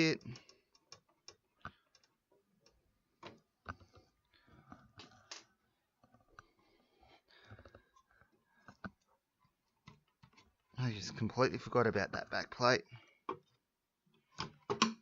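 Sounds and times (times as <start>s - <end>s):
hands working on computer hardware: 0.0s - 6.6s, 7.4s - 10.8s, 13.1s - 15.0s.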